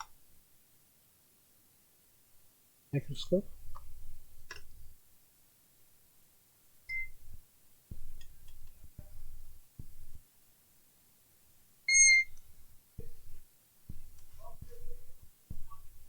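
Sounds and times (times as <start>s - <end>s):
short electronic beeps: 6.9s - 7.2s, 11.9s - 12.4s.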